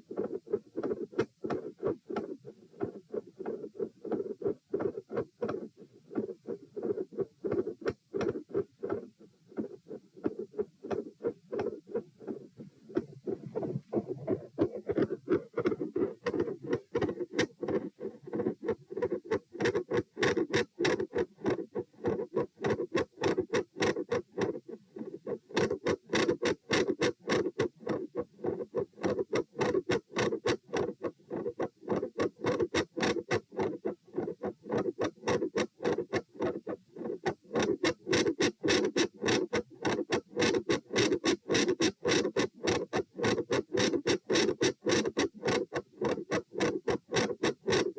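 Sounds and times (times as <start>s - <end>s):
heartbeat through stethoscope: 0.0s - 21.2s.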